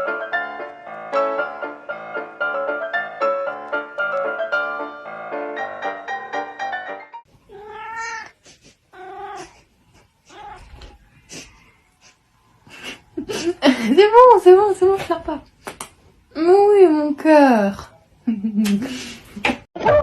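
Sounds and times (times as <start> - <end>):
piano music: 0.0 - 7.3
cat meowing: 7.5 - 9.6, 10.3 - 11.0.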